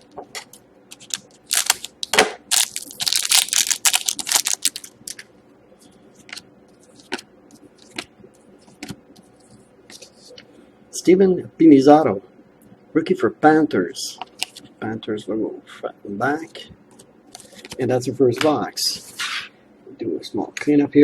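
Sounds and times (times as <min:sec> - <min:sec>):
cards being handled: 0:00.9 - 0:05.2
wrapper tearing and crinkling: 0:01.0 - 0:05.2.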